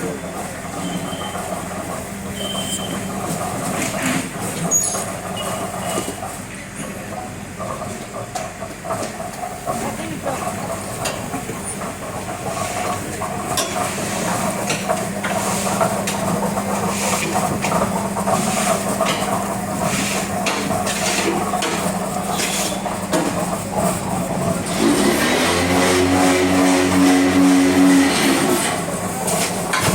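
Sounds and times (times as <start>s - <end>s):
machinery humming: 0.0s - 29.9s
knocks and clatter: 28.7s - 29.9s.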